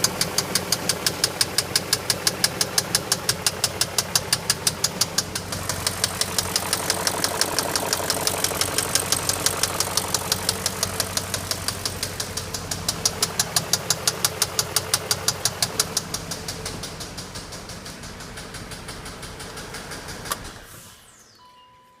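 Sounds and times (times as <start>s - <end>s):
car engine knocking: 0.0s - 20.7s
faint steady tone: 21.1s - 22.0s.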